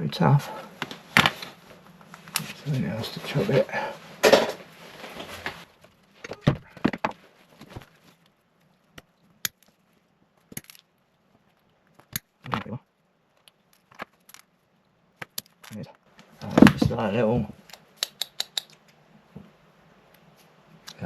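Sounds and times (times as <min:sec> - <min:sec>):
plastic parts and tool clicking: 0:15.2 - 0:15.8, 0:17.6 - 0:19.0.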